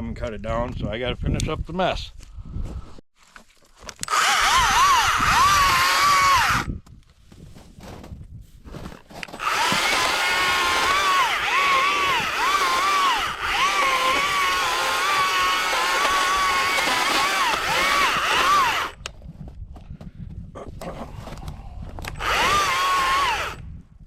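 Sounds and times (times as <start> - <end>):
electric chainsaw cutting wood: 4.0 - 6.7, 9.4 - 19.0, 22.0 - 23.6.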